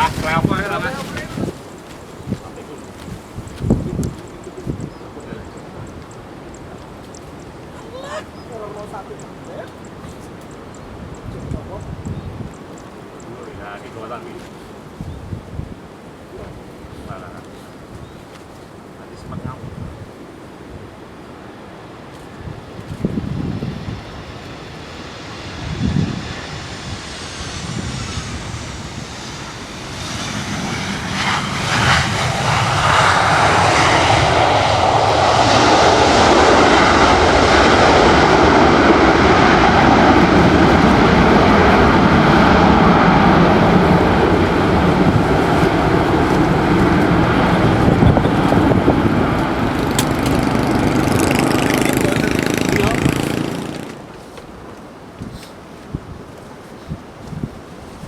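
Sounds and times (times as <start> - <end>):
jet engines rushing: 0.0 - 14.8, 22.5 - 54.6.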